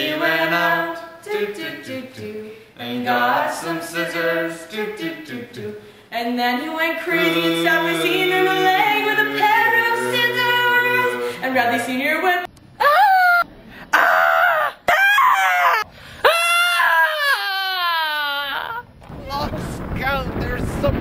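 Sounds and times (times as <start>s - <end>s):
voices singing in harmony: 0.0s - 12.5s.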